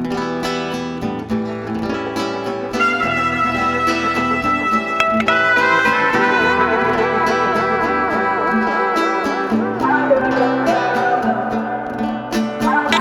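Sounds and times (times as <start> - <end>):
plucked guitar: 0.0 - 13.0
wavering vibrato melody: 2.8 - 11.9.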